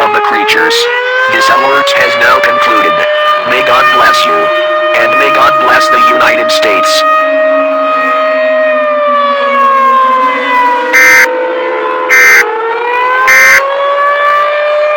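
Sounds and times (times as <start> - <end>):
civil defense siren wailing: 0.0 - 14.9
short harsh blasts: 11.0 - 11.3, 12.1 - 12.4, 13.3 - 13.6.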